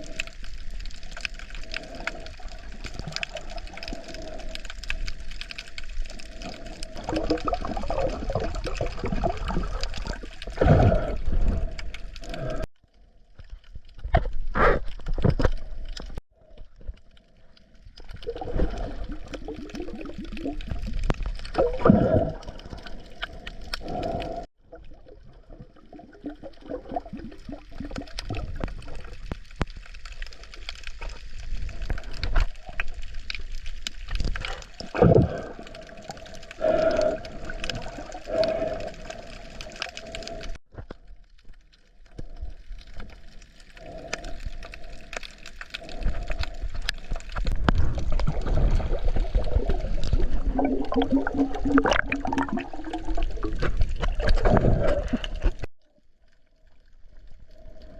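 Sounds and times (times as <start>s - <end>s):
water gurgling and bubbling: 5.3s - 12.7s, 18.0s - 29.2s, 34.2s - 40.5s, 45.8s - 55.7s.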